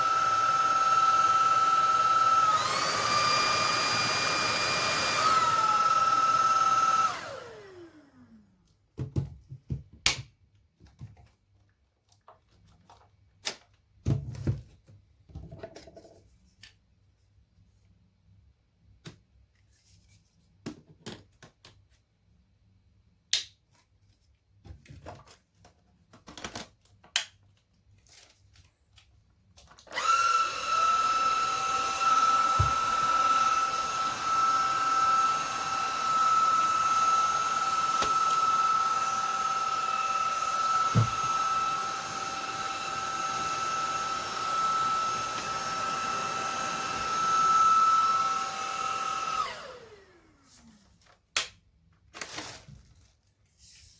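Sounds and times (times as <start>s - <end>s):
stick vacuum motor whining: 0.0s - 8.6s, 29.8s - 50.6s.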